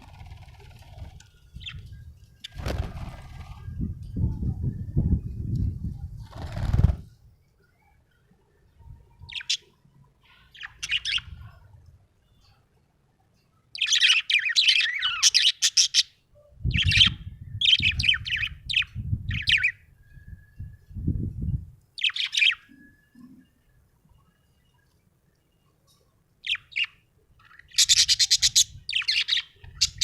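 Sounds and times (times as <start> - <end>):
budgerigar chirping: 27.5 - 30.0.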